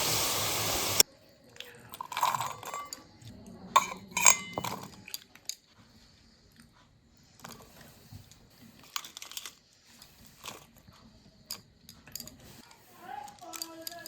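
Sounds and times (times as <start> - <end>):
soft kitchen rustling: 0.6 - 14.0
small clicks and crunches: 7.4 - 14.0.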